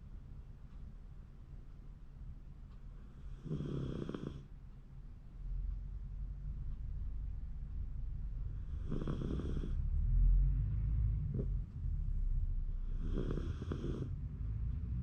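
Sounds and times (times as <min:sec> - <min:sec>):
low steady rumble: 0:00.0 - 0:03.4, 0:04.3 - 0:15.0
dog snoring: 0:03.0 - 0:04.5, 0:08.5 - 0:14.2.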